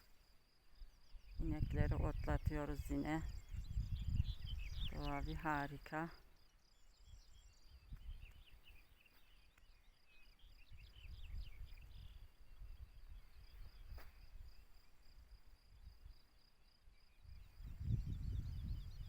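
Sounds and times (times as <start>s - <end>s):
small birds chirping: 0.7s - 19.0s
wind rumble on microphone: 1.2s - 5.8s, 7.1s - 8.7s, 10.7s - 16.2s, 17.2s - 19.0s.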